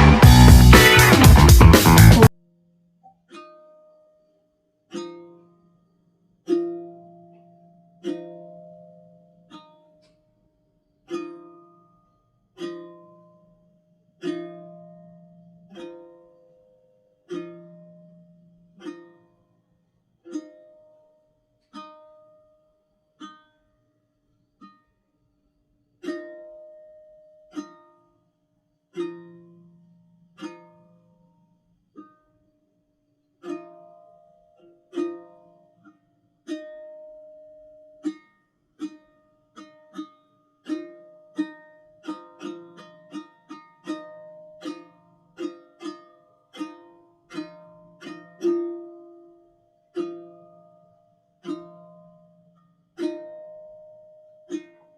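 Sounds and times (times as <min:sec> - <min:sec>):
plucked string chords: 0:00.0 - 0:02.3, 0:33.4 - 0:54.9.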